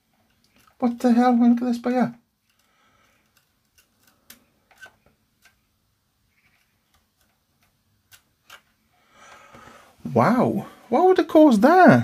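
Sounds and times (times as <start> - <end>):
faint hiss: 8.2 - 12.0.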